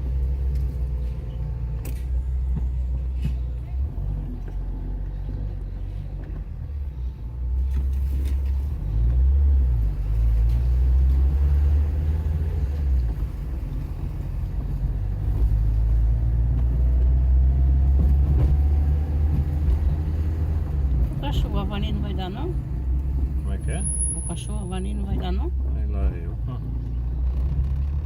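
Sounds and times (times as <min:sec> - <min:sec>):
car engine and road rumble: 0:00.0 - 0:28.0.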